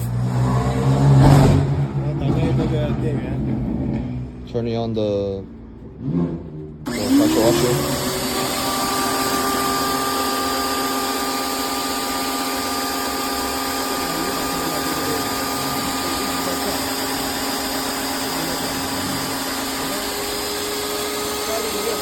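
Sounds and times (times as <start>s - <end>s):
pressure washer motor humming: 0.0s - 0.3s, 6.9s - 22.0s.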